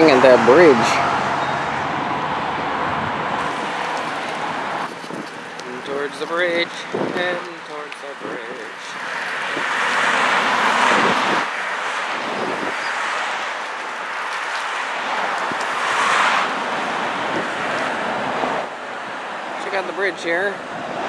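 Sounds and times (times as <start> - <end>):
road traffic: 0.0 - 21.0
wind on microphone: 1.8 - 13.0, 15.1 - 18.7.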